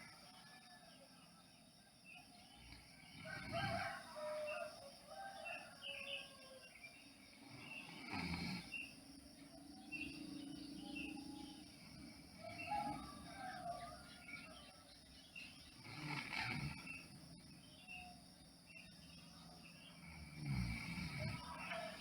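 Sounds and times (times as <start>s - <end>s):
small birds chirping: 5.5s - 22.0s.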